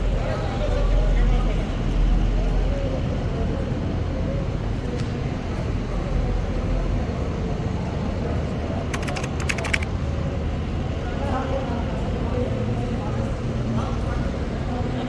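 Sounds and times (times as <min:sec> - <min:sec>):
rattle of sharp clicks: 0:08.9 - 0:09.9.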